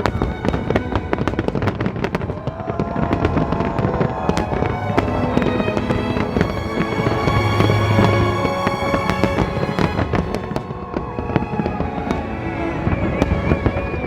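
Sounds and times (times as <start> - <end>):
fireworks cracking and banging: 0.0 - 6.9
classical violin music: 0.0 - 14.0.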